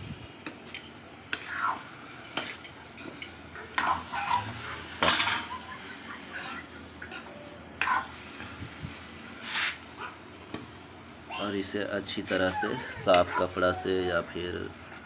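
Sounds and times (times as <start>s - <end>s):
metal cooking pot clanking: 5.0s - 5.6s.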